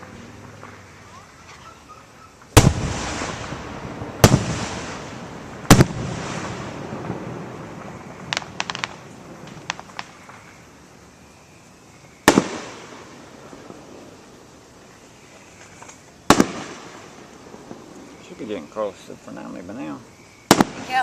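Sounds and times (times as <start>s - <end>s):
firework crackling pops: 2.3s - 21.0s
firework booms with rumbling echo: 2.5s - 10.5s, 12.2s - 14.5s, 16.2s - 18.6s, 20.4s - 21.0s.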